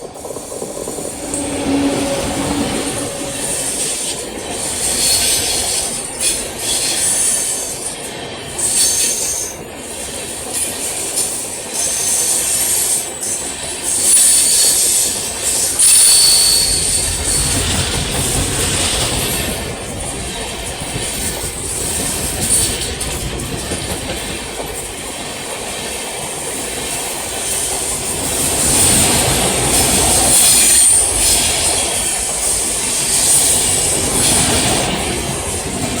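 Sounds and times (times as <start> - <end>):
train wheels clattering on rails: 0.0 - 36.0
high-pitched squeal: 0.2 - 5.5, 15.8 - 17.7.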